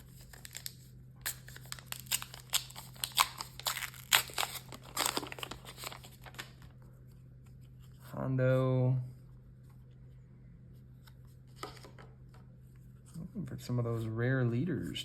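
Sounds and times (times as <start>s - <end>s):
foil wrapper tearing and crinkling: 0.0s - 6.6s.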